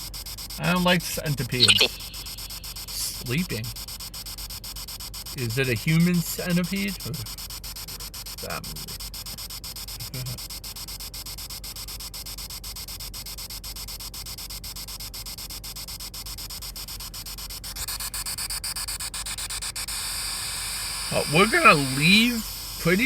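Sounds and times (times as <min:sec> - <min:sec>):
fast even ticking: 0:00.6 - 0:03.8, 0:21.1 - 0:23.0
static hiss: 0:00.6 - 0:03.9, 0:19.7 - 0:23.0.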